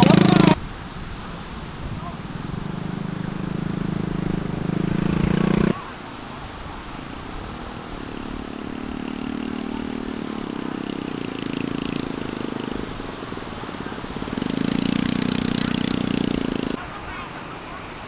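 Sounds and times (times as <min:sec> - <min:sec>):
small engine running: 0:00.0 - 0:16.8.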